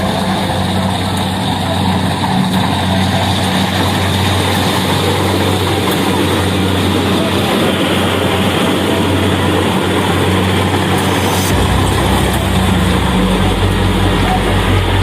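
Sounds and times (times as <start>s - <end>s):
harvesting machine engine running: 0.0s - 15.0s
deep low hum: 10.2s - 15.0s.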